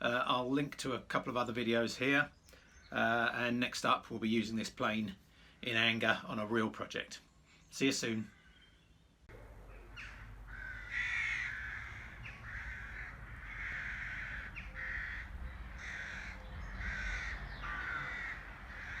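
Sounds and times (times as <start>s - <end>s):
crows cawing: 9.7s - 19.0s.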